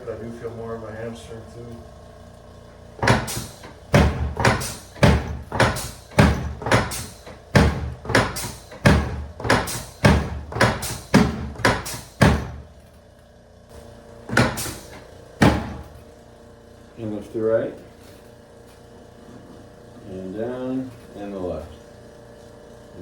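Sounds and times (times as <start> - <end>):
sharp knocks: 3.0 - 12.8, 14.3 - 15.9.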